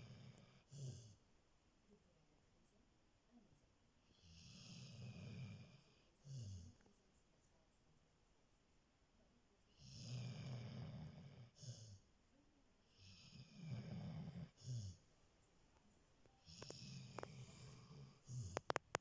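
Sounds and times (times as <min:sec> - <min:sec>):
dog snoring: 0:00.0 - 0:01.2, 0:04.1 - 0:06.8, 0:09.7 - 0:12.1, 0:12.9 - 0:15.0, 0:16.4 - 0:18.8.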